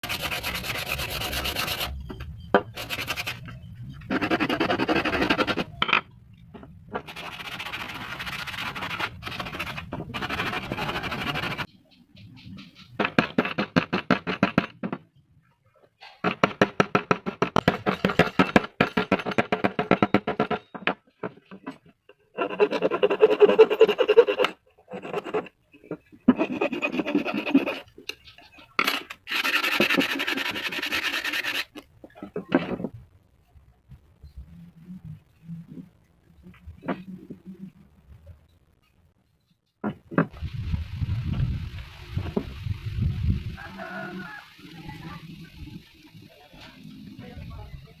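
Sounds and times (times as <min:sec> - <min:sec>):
back-and-forth strokes on wood: 0:00.0 - 0:02.0, 0:07.0 - 0:11.7, 0:29.3 - 0:31.8
scraping and rasping wood: 0:00.0 - 0:02.0, 0:02.7 - 0:05.7, 0:06.9 - 0:11.7, 0:21.4 - 0:32.2.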